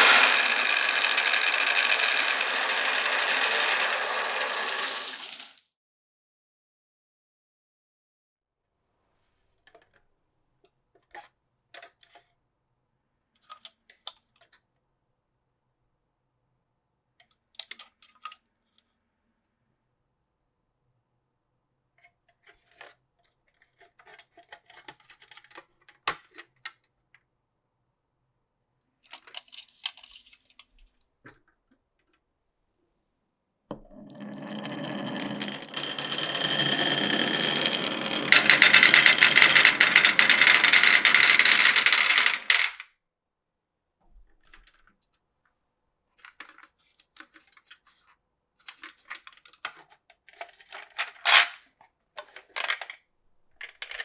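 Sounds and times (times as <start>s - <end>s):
marbles clicking and rattling: 0.0s - 5.6s, 34.0s - 42.8s.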